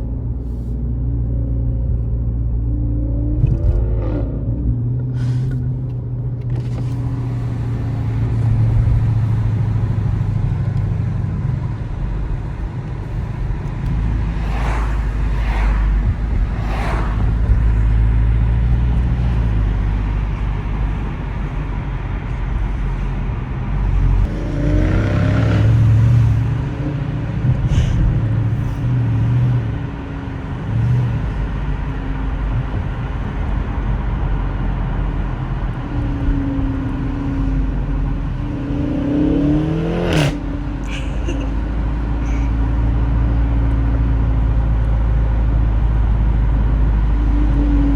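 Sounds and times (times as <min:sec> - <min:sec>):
car engine running: 0:00.0 - 0:24.3.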